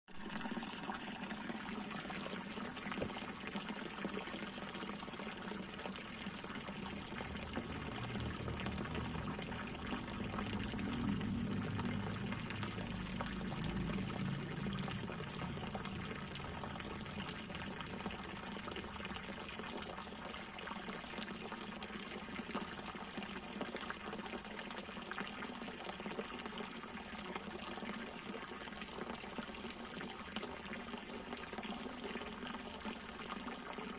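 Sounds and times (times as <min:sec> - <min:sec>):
water gushing into pond: 0:00.1 - 0:33.9.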